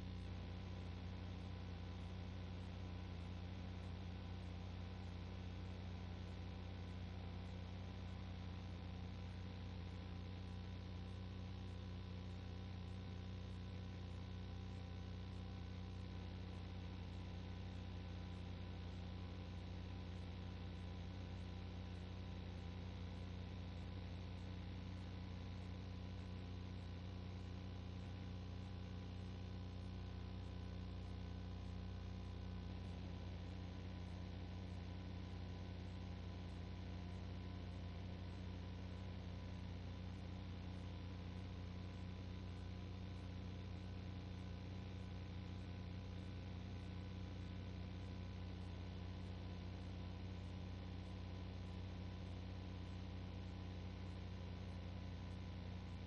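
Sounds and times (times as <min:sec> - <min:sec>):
low electrical hum: 0:00.0 - 0:56.0.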